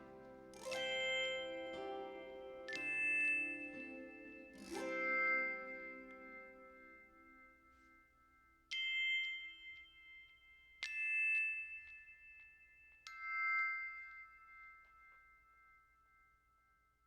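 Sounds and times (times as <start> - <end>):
struck bell-like notes: 0.0 - 10.2.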